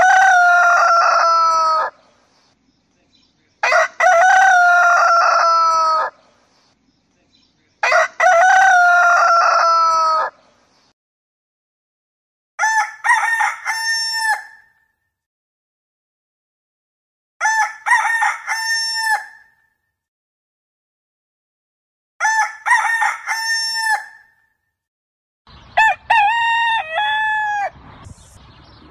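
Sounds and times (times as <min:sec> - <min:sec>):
rooster crowing: 0:00.0 - 0:02.0, 0:03.6 - 0:06.2, 0:07.8 - 0:10.4, 0:12.6 - 0:14.6, 0:17.4 - 0:19.5, 0:22.2 - 0:24.3, 0:25.8 - 0:27.8.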